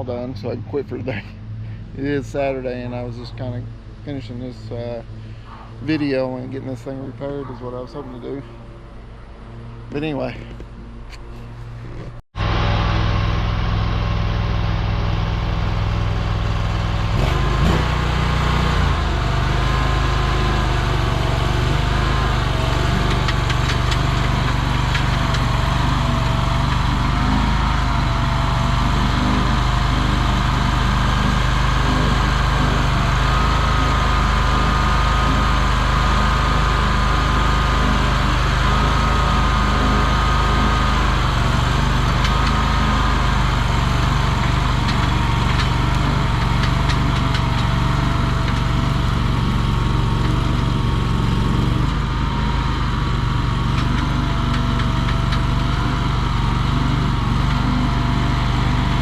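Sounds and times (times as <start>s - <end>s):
small gas engine running: 11.2s - 59.0s
wavering high whine: 12.4s - 17.4s.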